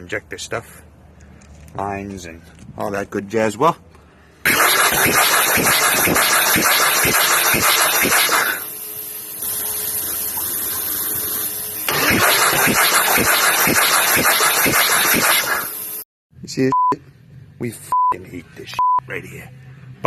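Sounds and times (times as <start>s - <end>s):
steady hum: 4.1s - 16.0s
diesel engine cranking on starter: 4.5s - 8.7s, 11.8s - 15.9s.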